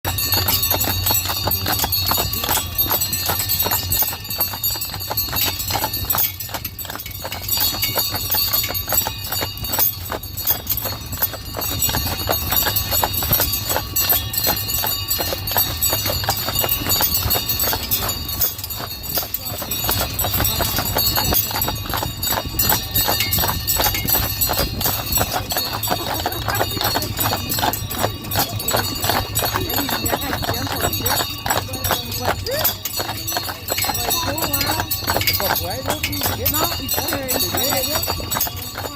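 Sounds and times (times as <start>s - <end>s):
horse hooves clip-clopping: 0.0s - 38.9s
sleigh bells jingling: 0.0s - 38.9s.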